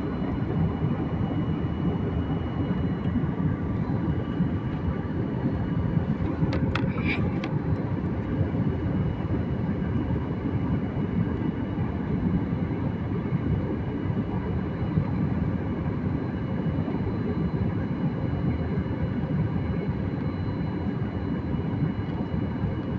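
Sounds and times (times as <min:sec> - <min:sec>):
jet engines rumbling: 0:00.0 - 0:11.0.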